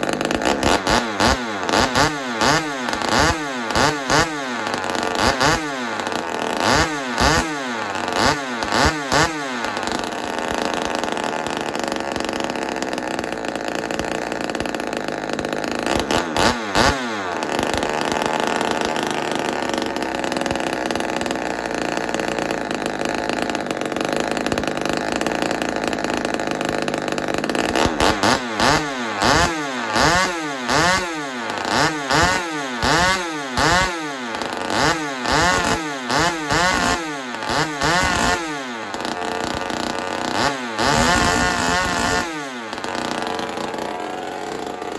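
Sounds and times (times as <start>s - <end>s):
chainsaw engine revving: 0.0s - 44.9s.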